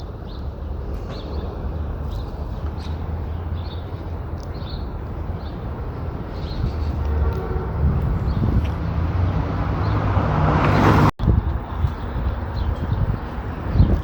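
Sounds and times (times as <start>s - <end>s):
small birds chirping: 0.0s - 7.4s, 11.4s - 14.0s
city traffic rumble: 0.0s - 14.0s.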